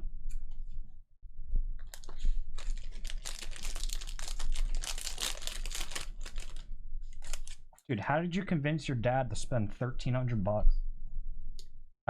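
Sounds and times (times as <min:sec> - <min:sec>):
foil wrappers crinkling and tearing: 0:01.8 - 0:07.6
cards clicking and rustling: 0:01.9 - 0:06.6, 0:07.2 - 0:07.6.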